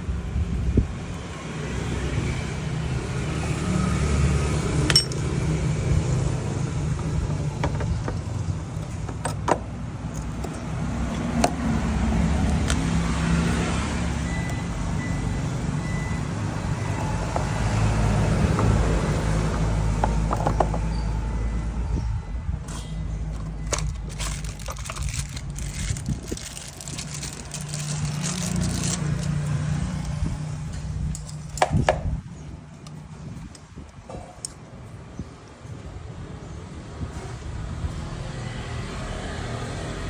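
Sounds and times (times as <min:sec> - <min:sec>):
vehicle engine rumbling: 0:00.0 - 0:40.0
sharp clicks and knocks: 0:06.9 - 0:11.7.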